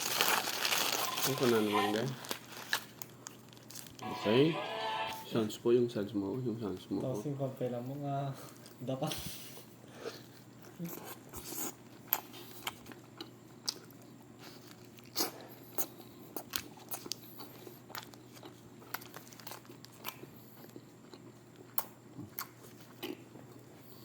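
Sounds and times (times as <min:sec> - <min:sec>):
person chewing crunchy food: 0:00.0 - 0:04.0, 0:10.0 - 0:24.0.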